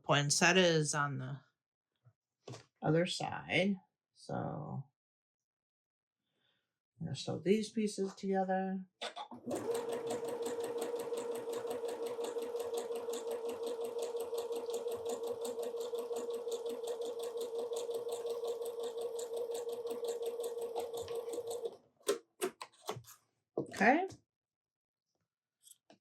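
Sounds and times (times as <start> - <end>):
sewing machine motor hum: 9.5 - 21.8
sewing machine needle rattle: 9.5 - 21.8.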